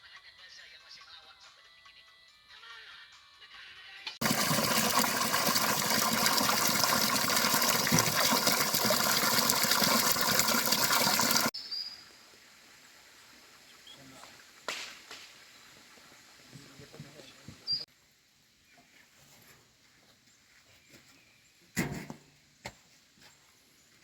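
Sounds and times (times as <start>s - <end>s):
water rushing: 4.2s - 11.5s.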